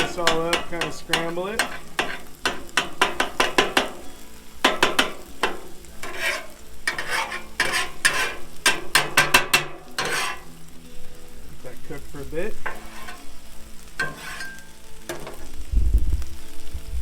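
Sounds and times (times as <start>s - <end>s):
metal spatulas clacking on griddle: 0.0s - 10.5s, 12.6s - 13.4s, 14.0s - 15.6s
frying sizzle: 0.0s - 17.0s.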